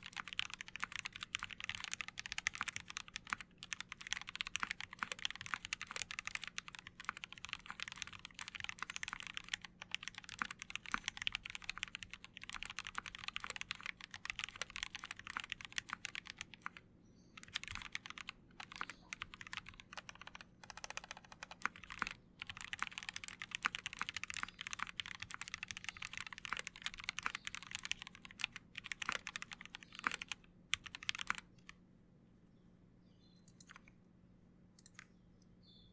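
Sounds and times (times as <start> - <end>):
mechanical keyboard typing: 0.0 - 16.8, 17.4 - 31.7, 33.5 - 33.9.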